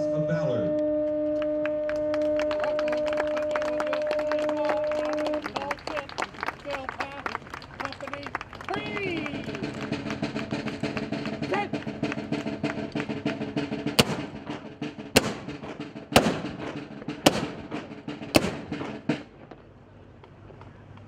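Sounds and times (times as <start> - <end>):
rapid snare drumming: 4.7 - 19.5
loud drum strikes: 9.2 - 19.5.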